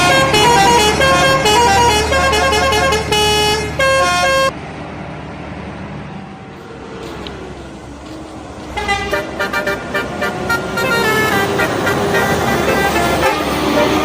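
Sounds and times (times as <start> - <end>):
bus horn playing tune: 0.0 - 4.6, 8.7 - 14.0
road and engine noise: 0.0 - 14.0.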